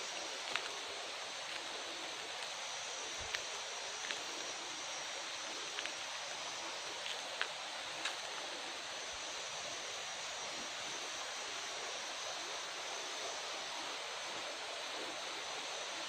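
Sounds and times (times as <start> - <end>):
running water: 0.0 - 16.0.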